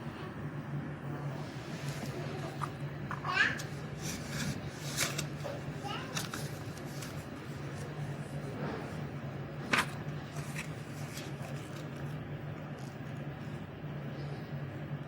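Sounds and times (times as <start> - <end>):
faint small noises: 0.0 - 15.0
steady low hum: 0.0 - 15.0.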